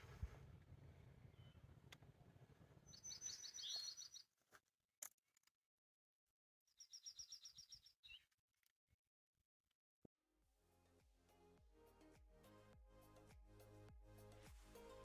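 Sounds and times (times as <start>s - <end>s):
songbird trilling: 2.9s - 4.2s.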